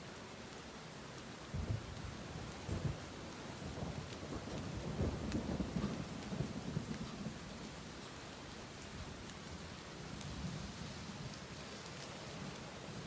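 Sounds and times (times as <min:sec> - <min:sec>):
steady rain: 0:00.0 - 0:13.0
low rumble of thunder: 0:01.5 - 0:07.6.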